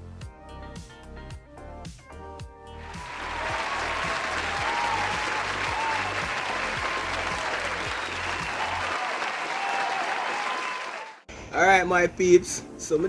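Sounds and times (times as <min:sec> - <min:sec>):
background music with bass beat: 0:00.0 - 0:08.9
faint cheers: 0:02.8 - 0:11.2
crowd applause: 0:02.8 - 0:11.3.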